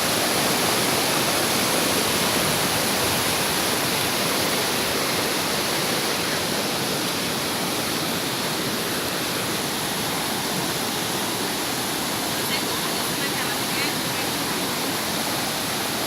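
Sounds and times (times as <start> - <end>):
waterfall and river rushing: 0.0 - 16.0.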